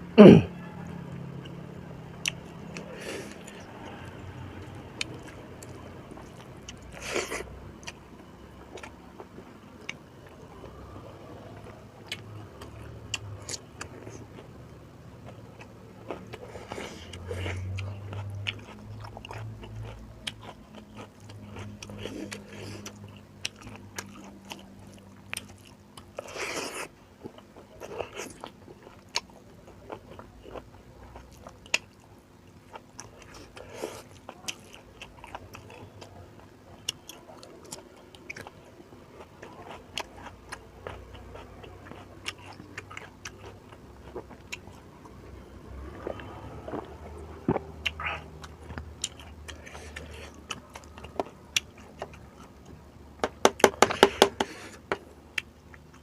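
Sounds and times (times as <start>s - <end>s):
chewing and lip smacking: 15.2s - 38.6s, 39.2s - 45.2s, 45.9s - 52.8s.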